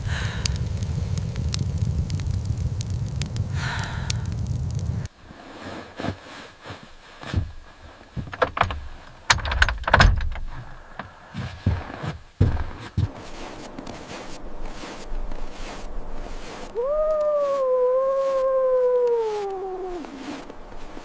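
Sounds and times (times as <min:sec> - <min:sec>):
low steady rumble: 0:00.0 - 0:05.1
fire crackling: 0:00.0 - 0:05.4, 0:12.3 - 0:21.0
knocks thuds and rustling: 0:07.2 - 0:13.2.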